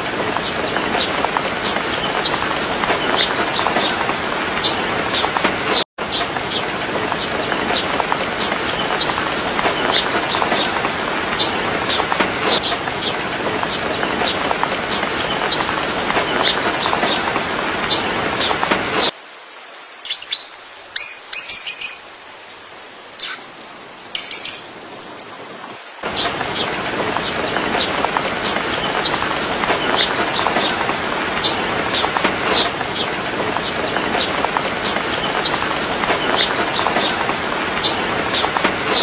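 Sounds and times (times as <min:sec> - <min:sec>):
small bird chirping: 0:20.1 - 0:22.0, 0:24.2 - 0:24.8.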